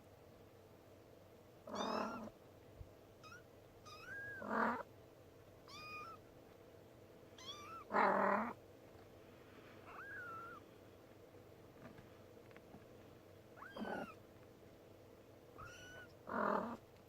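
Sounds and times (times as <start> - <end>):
kitten mewing: 1.7 - 2.3, 3.2 - 4.9, 5.7 - 6.2, 7.4 - 8.6, 9.9 - 10.7, 13.6 - 14.2, 15.6 - 16.8.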